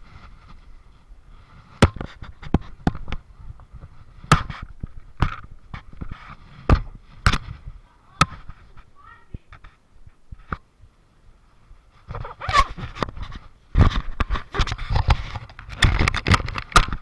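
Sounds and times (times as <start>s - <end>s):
sharp pops and bangs: 1.8s - 3.2s, 4.2s - 7.6s, 13.8s - 17.0s.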